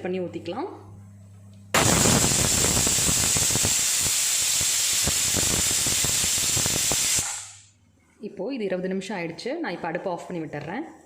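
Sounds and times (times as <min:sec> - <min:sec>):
pressure cooker steam hissing: 0:01.8 - 0:07.6.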